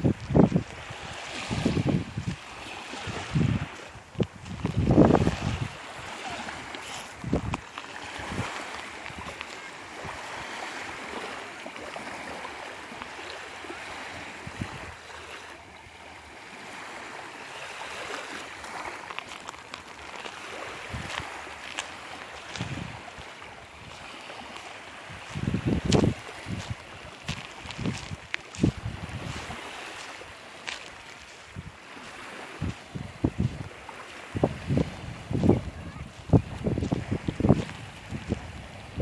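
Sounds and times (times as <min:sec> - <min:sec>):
wind buffeting microphone: 0:00.0 - 0:11.0, 0:14.2 - 0:15.0, 0:20.7 - 0:21.8, 0:22.4 - 0:24.1, 0:25.0 - 0:29.8, 0:30.8 - 0:39.0
sea waves washing on shore: 0:00.0 - 0:39.0.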